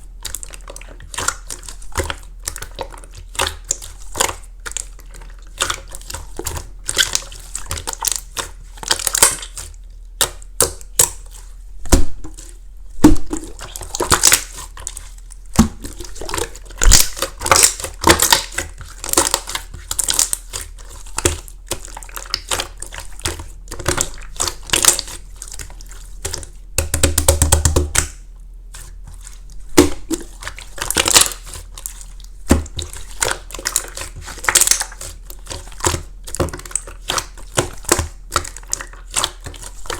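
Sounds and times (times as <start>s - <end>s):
rapid crackling of slime: 0.0s - 39.9s
slime clicking and popping: 15.6s - 20.6s, 32.5s - 35.1s.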